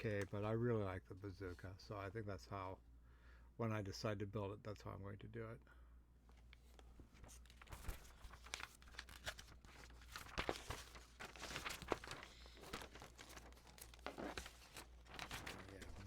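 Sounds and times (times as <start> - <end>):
packaging crinkling: 7.3 - 16.0.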